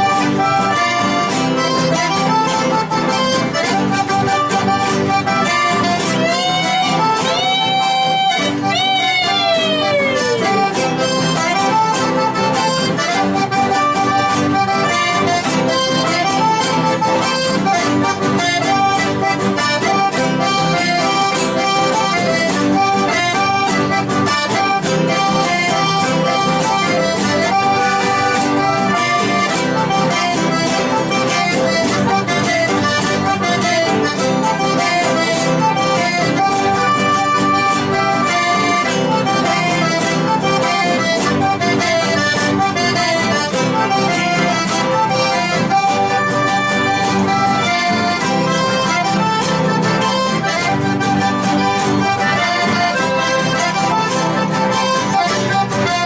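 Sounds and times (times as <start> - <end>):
accordions and guitar playing: 0.0 - 56.0.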